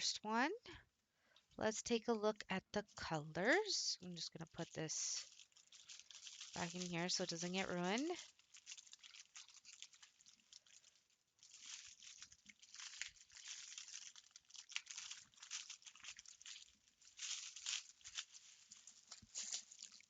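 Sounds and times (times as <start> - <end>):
packaging crinkling and rustling: 3.5 - 20.0.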